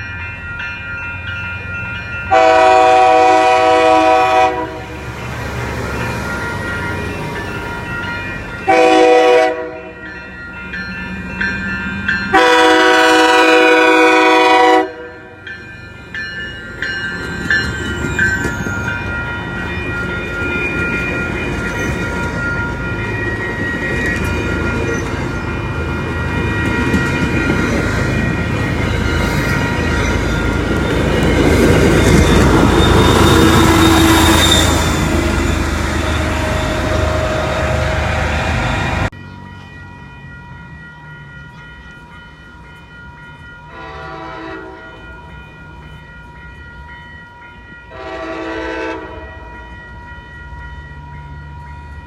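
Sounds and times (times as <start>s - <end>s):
train rumble and wheel clatter: 0.0s - 52.0s
train horn chord: 2.3s - 5.0s, 8.7s - 10.0s, 12.3s - 15.4s, 33.6s - 39.0s, 43.7s - 45.1s, 47.9s - 49.6s.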